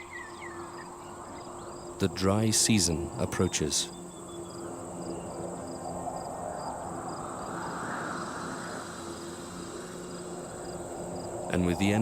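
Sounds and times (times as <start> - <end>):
crickets trilling: 0.0 - 12.0
soft background rush: 0.0 - 12.0.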